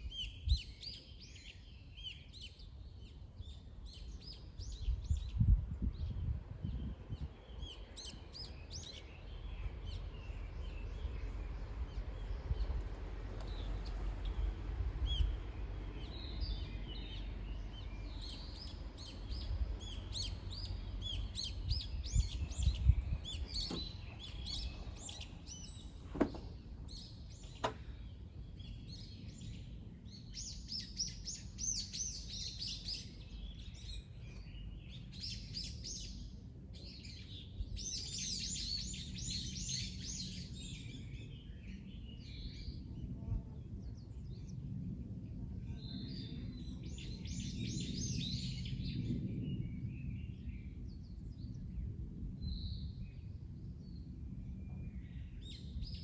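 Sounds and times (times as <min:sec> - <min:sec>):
small birds chirping and singing: 0:00.0 - 0:56.0
steady low rumble: 0:08.3 - 0:30.3.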